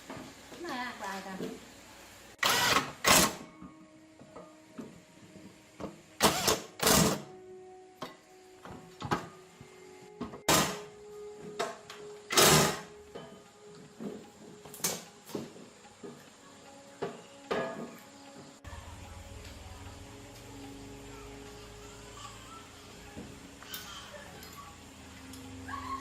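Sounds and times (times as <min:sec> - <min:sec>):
knocks and scrapes of repair work: 0:10.2 - 0:10.9, 0:11.5 - 0:16.3, 0:17.0 - 0:18.4.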